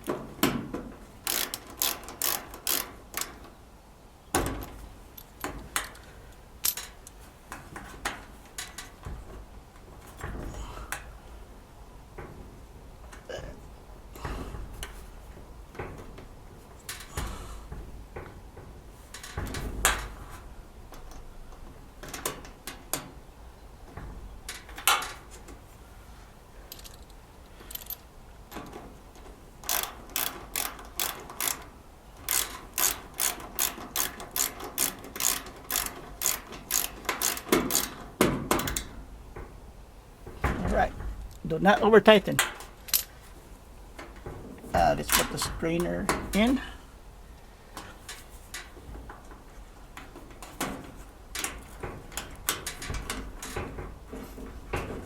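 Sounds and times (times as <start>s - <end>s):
ratcheting screwdriver clicking: 1.2s - 3.4s, 29.6s - 31.7s, 32.3s - 38.0s.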